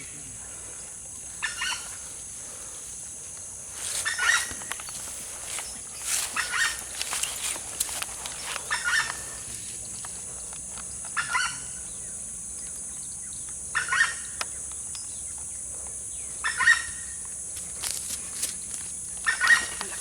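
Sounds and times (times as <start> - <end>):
steady high-pitched hiss: 0.0 - 20.0
bird calling harshly: 1.4 - 2.1, 3.9 - 9.5, 11.2 - 11.9, 13.7 - 14.4, 16.4 - 17.2, 19.2 - 20.0.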